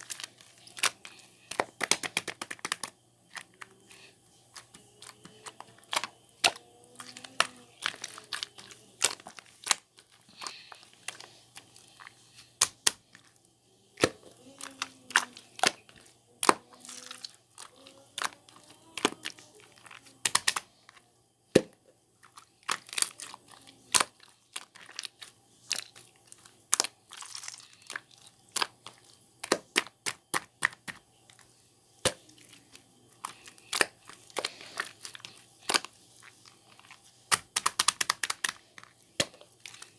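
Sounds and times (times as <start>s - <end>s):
slime squelching and popping: 0.0s - 13.4s, 14.0s - 20.6s, 21.5s - 39.9s.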